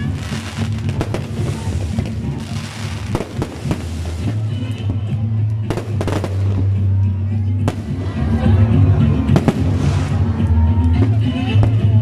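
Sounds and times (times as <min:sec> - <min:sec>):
fireworks bangs: 0:00.0 - 0:05.0, 0:05.7 - 0:06.8, 0:09.3 - 0:10.3.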